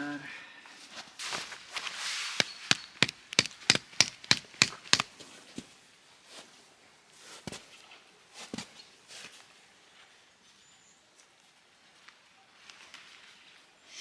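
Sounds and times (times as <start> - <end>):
sharp strikes on hard surface: 2.4 - 5.1.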